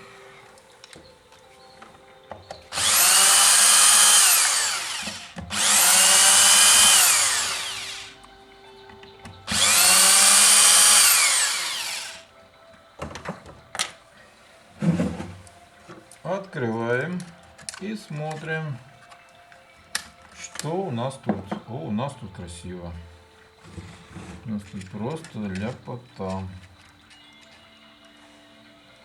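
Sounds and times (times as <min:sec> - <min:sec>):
cordless drill spinning: 0:02.7 - 0:08.2, 0:09.5 - 0:12.3.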